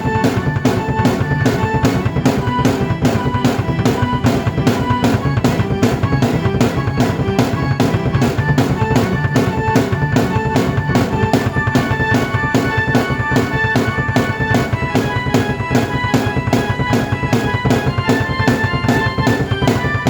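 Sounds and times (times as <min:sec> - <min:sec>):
drum kit beat: 0:00.0 - 0:20.0
keyboard melody: 0:00.0 - 0:20.0.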